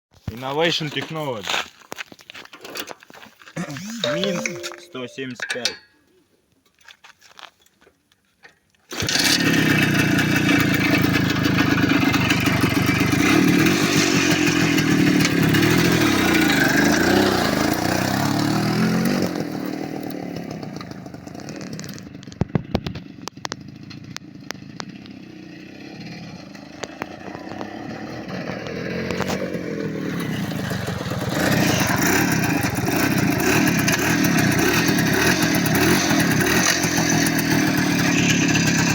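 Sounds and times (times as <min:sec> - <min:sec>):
motorcycle engine revving: 0:09.0 - 0:38.9.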